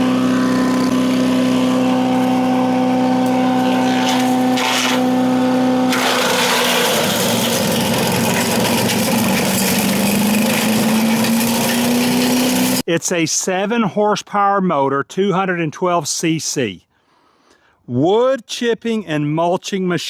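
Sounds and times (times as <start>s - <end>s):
harsh grinding noise: 0.0s - 12.9s
wood chipper engine running: 0.0s - 12.9s.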